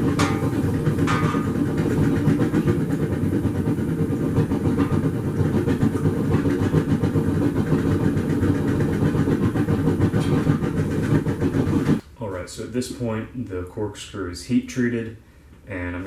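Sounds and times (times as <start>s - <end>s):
shop equipment rumbling: 0.0s - 12.1s.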